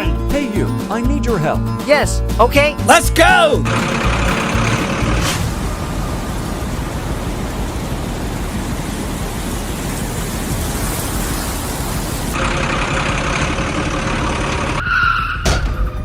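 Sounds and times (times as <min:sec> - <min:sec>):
steady tones: 0:03.6 - 0:12.4
vehicle engine running: 0:03.6 - 0:15.0.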